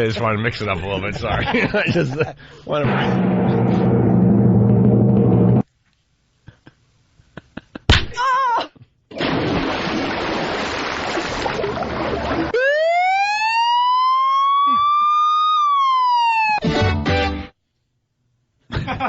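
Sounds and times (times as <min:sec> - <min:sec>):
loud rushing noise: 0:02.8 - 0:05.6
siren wail: 0:12.5 - 0:16.6.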